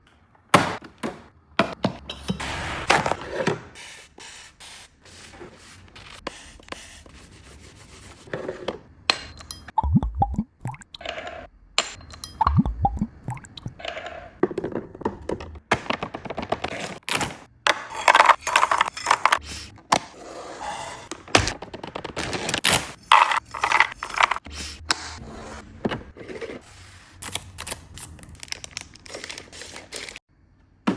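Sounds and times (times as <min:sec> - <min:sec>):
items knocking onto shelves: 0:00.4 - 0:03.7, 0:14.4 - 0:20.2, 0:21.1 - 0:24.4
plastic packaging crinkling: 0:27.2 - 0:30.2.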